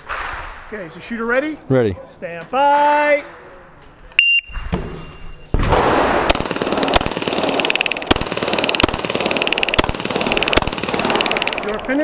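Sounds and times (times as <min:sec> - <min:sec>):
pistol shots: 0:05.6 - 0:11.9.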